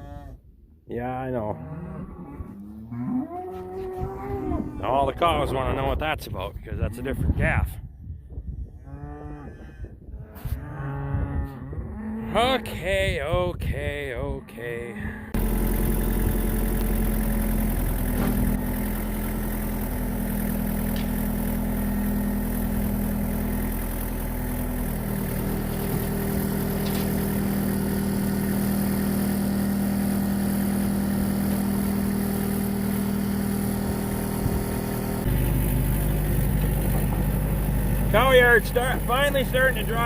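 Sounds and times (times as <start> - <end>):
excavator engine running: 15.3 - 40.0.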